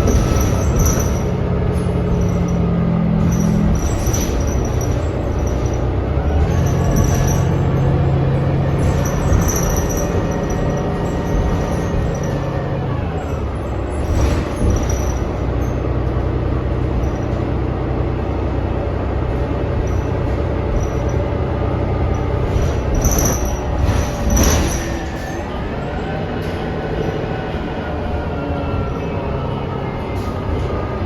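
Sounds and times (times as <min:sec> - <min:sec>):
knocks and rattles: 0:00.0 - 0:25.6
bus engine running: 0:00.0 - 0:31.0.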